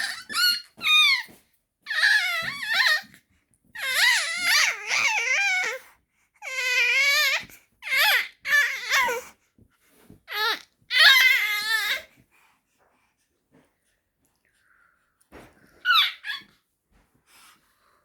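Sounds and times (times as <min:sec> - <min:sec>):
baby squealing: 0:00.0 - 0:01.3, 0:01.9 - 0:03.1, 0:03.8 - 0:05.8, 0:10.3 - 0:12.0, 0:15.8 - 0:16.5.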